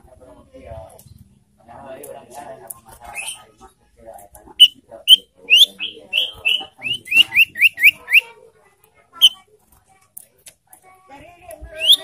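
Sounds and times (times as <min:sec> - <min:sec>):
bird whistling upslurred notes: 0:04.6 - 0:08.2, 0:11.8 - 0:12.0.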